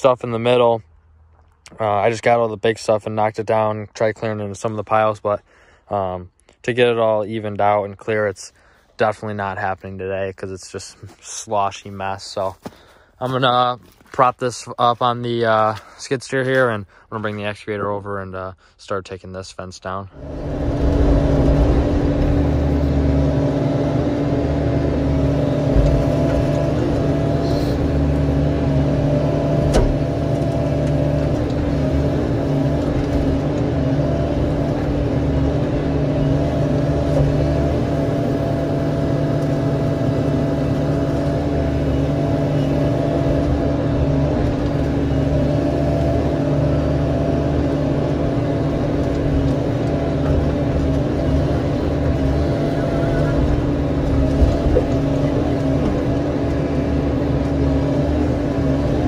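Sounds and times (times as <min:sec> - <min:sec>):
construction machine engine running: 0:20.1 - 0:59.0.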